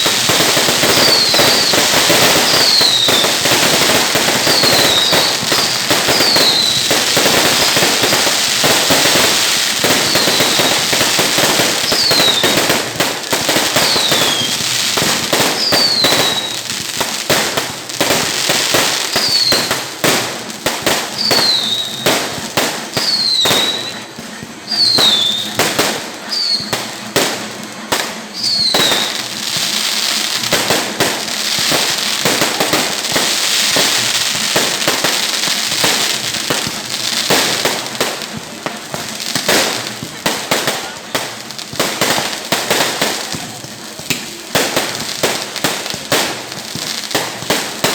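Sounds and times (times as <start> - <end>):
falling firework whistles: 0.0 - 16.8, 18.1 - 20.0, 21.0 - 27.0, 28.1 - 37.6
firecracker bangs and crackles: 0.0 - 47.9.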